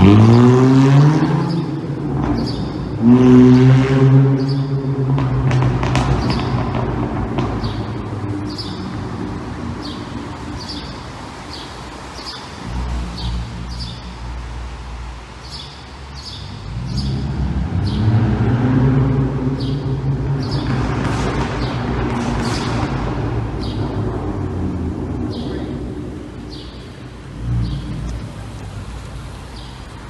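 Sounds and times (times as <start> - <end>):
loud car exhaust rumble: 0.0 - 30.0
bird chirping: 9.8 - 14.2, 15.4 - 18.0, 25.2 - 28.3.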